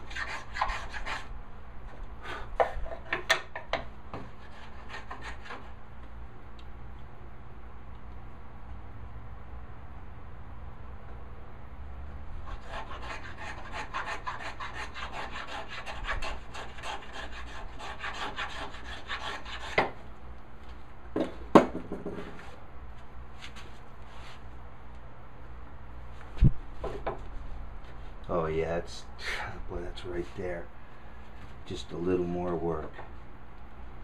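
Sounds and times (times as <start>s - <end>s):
hand tool scraping wood: 0.0s - 1.2s, 4.2s - 5.8s, 12.5s - 19.9s.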